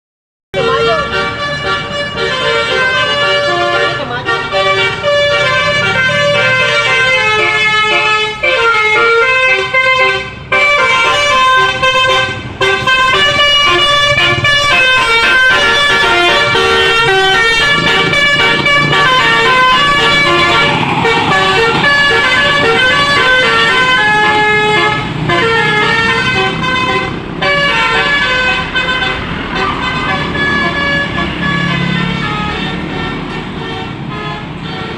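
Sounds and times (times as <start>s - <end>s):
multi-tone bus horn tune: 0.6s - 34.9s.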